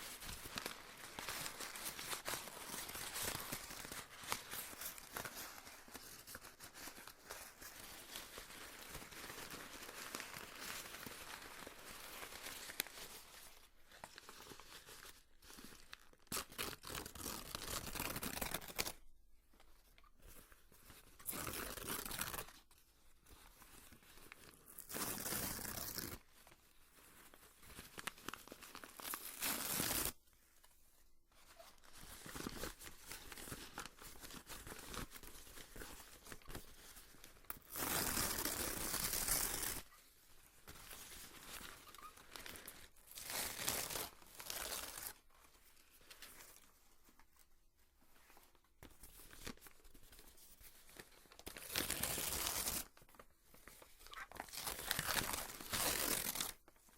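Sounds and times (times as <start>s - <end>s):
paper crinkling: 48.1s - 56.9s
paper tearing: 54.1s - 56.6s.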